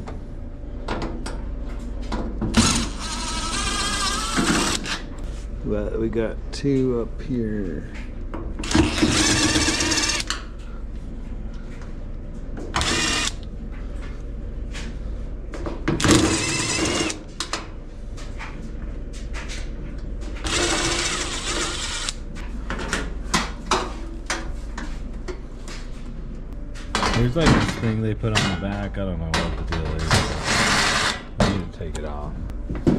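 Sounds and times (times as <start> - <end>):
cordless drill whirring: 2.5 - 5.0, 8.6 - 10.4, 12.8 - 13.4, 16.0 - 17.3, 20.4 - 22.2.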